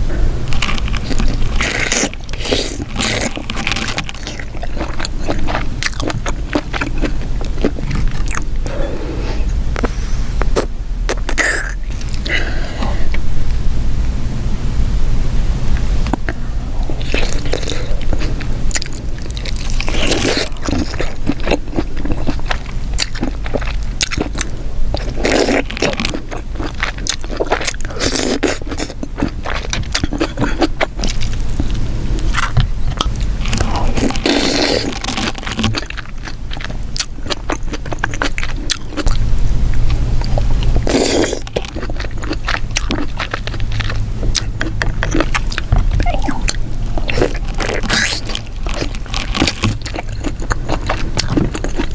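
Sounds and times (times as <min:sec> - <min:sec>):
low hum: 0:00.0 - 0:25.2
wet chewing and smacking: 0:00.5 - 0:08.7, 0:09.7 - 0:12.4, 0:16.1 - 0:51.9.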